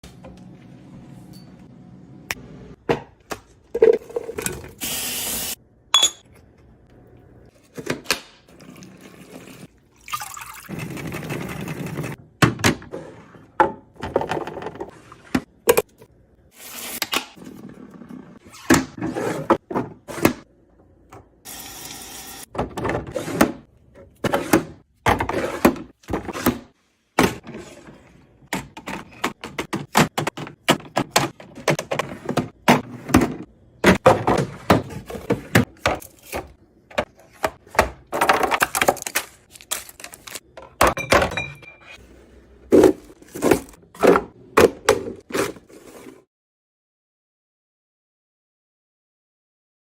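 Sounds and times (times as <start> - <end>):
kitchen items knocking and clattering: 2.7 - 4.8, 10.7 - 16.1, 19.0 - 20.5, 22.5 - 42.0, 42.6 - 46.2.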